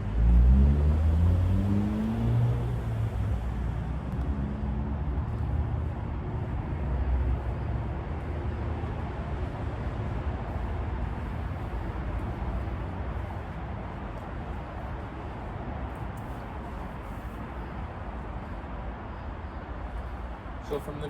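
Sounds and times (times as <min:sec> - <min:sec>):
low outdoor rumble: 0:00.0 - 0:21.0.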